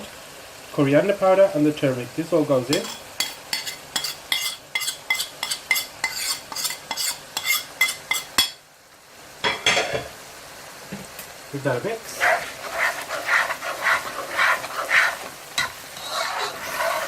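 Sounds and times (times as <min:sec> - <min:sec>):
light frying sizzle: 0:00.0 - 0:17.0
metal spoon scraping a pan: 0:02.7 - 0:08.6, 0:12.1 - 0:17.0.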